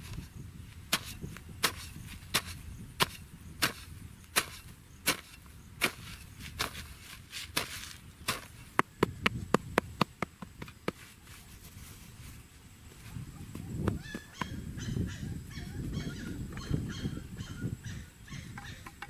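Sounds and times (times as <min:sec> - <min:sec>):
wood being chopped: 0:00.9 - 0:06.8, 0:07.5 - 0:11.0.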